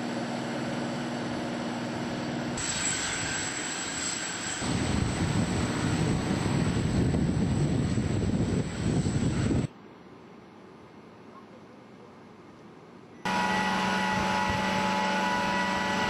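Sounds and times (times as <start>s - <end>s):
high engine whine: 0.0s - 9.7s, 13.2s - 16.0s
airplane engines running: 0.0s - 9.8s, 13.2s - 16.0s.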